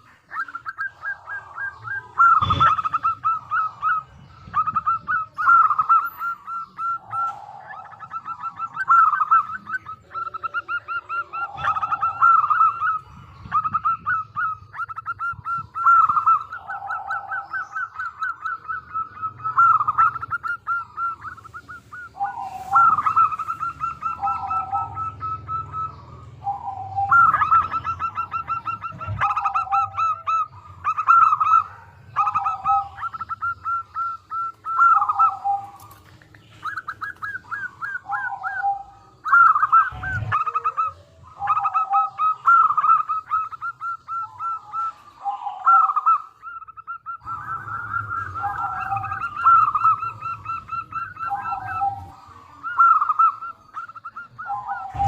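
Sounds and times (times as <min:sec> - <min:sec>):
doves cooing: 0:00.0 - 0:55.0.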